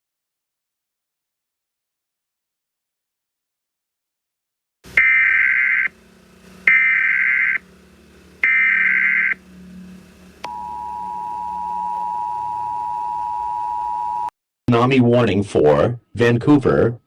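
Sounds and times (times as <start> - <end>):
shrill data bursts: 4.9 - 11.8
two-tone alert signal: 10.4 - 14.3.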